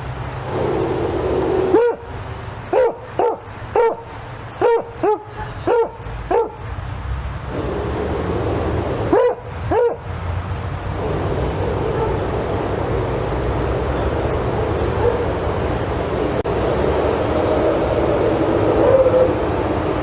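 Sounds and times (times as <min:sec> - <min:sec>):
dog barking: 0:01.5 - 0:02.1, 0:02.7 - 0:06.6, 0:09.1 - 0:10.0, 0:11.6 - 0:12.3, 0:14.5 - 0:15.4.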